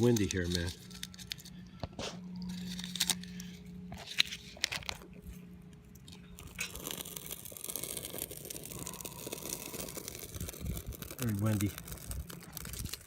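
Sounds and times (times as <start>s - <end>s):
crunching and clicking handling: 0.0s - 13.0s
wind on microphone: 10.2s - 11.2s.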